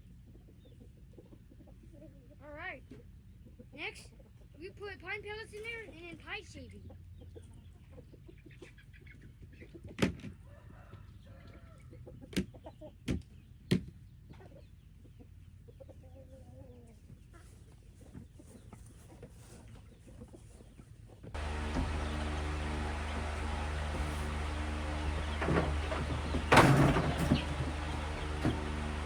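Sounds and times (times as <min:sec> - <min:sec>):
chickens clucking quietly: 0:00.1 - 0:04.6, 0:06.8 - 0:13.4, 0:14.2 - 0:29.0
sharp knocks: 0:21.4 - 0:29.0.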